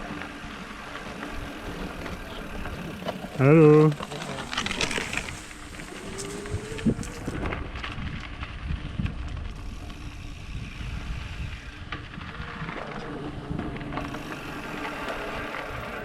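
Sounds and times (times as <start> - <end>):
electric bike hum: 0.0 - 16.0
wind buffeting microphone: 4.4 - 16.0.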